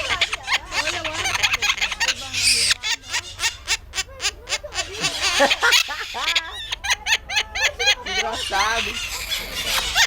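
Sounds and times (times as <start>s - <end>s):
animal squawking calls: 0.0s - 10.0s.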